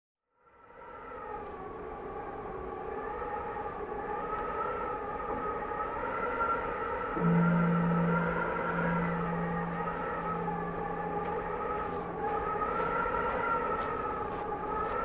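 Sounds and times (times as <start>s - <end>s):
wind howling and whistling: 0.4s - 15.0s.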